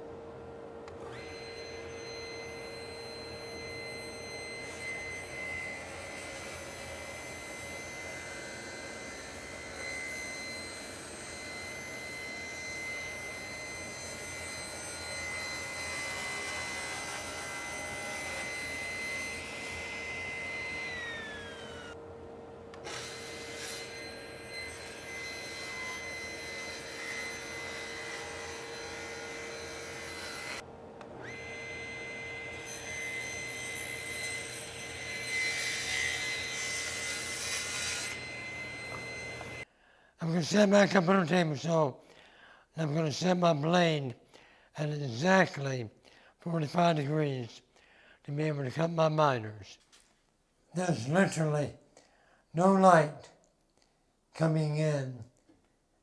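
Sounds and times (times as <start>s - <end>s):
power tool whining: 0.8s - 39.7s.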